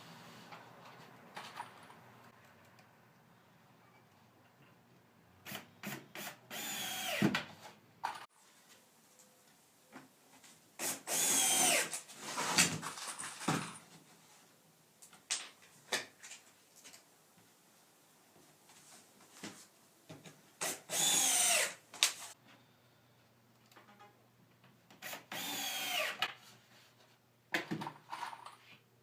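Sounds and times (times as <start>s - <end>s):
power drill driving screws: 5.5s - 7.4s, 10.8s - 12.0s, 20.6s - 21.8s, 25.0s - 26.2s.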